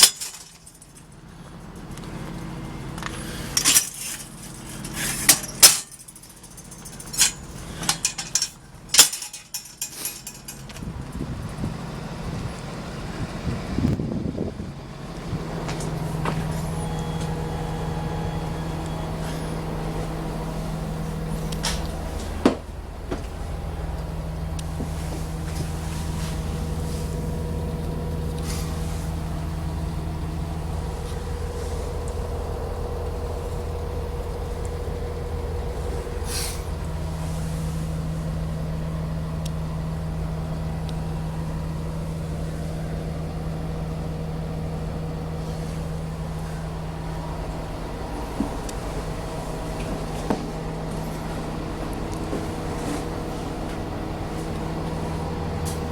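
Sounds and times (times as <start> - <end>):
diesel bus engine running: 0.0 - 55.9
short hisses: 36.2 - 36.7.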